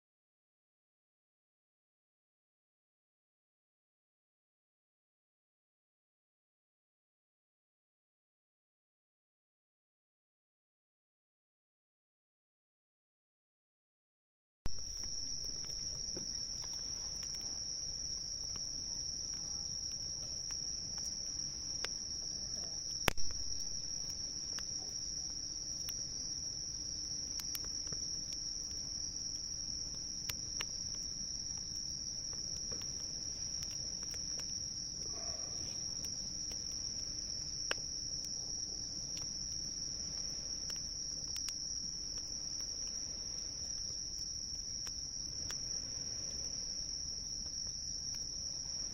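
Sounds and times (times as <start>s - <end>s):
campfire crackling: 14.7s - 48.9s
campfire pop: 14.7s - 48.9s
crickets chirring: 14.7s - 48.9s.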